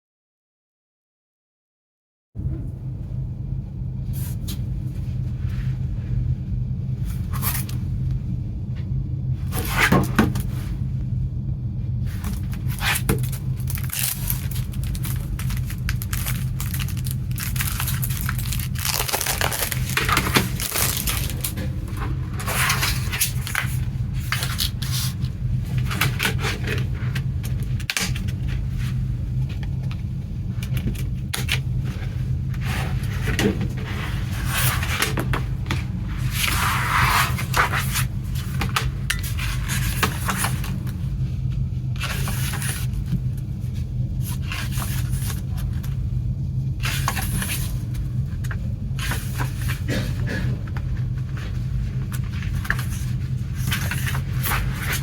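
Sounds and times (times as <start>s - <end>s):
steady low hum: 2.4s - 55.0s
plastic wrapping crinkling: 12.2s - 25.2s.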